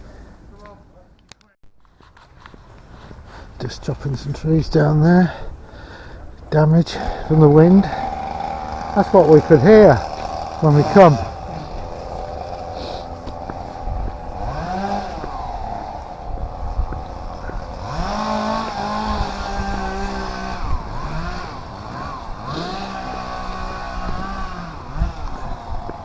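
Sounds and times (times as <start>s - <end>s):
chainsaw revving and cutting: 6.9s - 26.0s.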